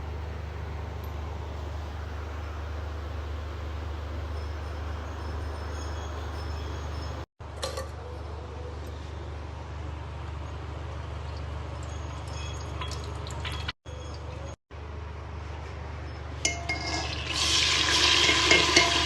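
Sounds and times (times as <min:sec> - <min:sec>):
food frying in oil: 0:11.4 - 0:14.1, 0:16.5 - 0:19.0
utensil clinking against pot: 0:16.4 - 0:19.0.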